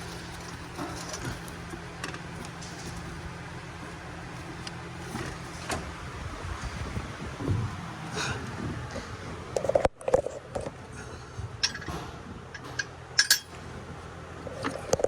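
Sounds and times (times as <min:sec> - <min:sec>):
metal tools clinking on engine parts: 0:00.0 - 0:06.0, 0:11.6 - 0:13.7.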